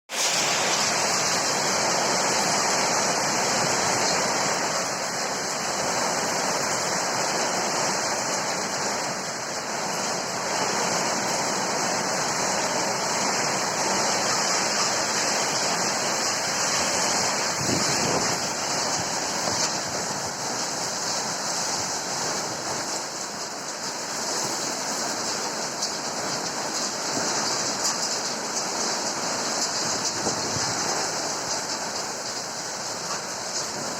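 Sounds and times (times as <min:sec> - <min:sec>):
heavy rain pouring: 0:00.1 - 0:33.9
strong wind: 0:15.3 - 0:23.0, 0:29.8 - 0:31.2.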